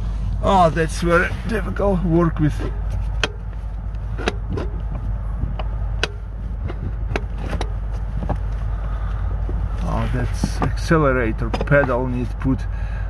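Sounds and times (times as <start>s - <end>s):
truck engine running: 0.0s - 13.0s
hand tools clicking and knocking: 4.1s - 8.6s, 10.4s - 12.0s.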